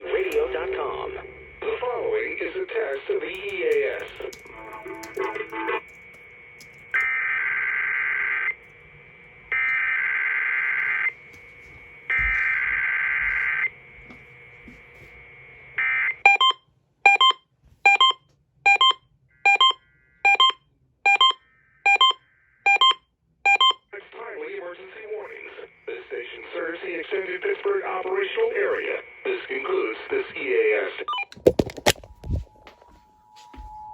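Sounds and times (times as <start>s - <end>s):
two-tone attention signal beeps: 16.3s - 23.8s.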